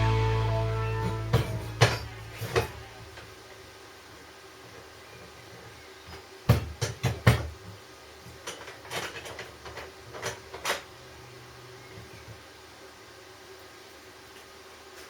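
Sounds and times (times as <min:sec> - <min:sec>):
faint hum: 0:00.0 - 0:06.2
sharp knocks and clatters: 0:06.5 - 0:07.6.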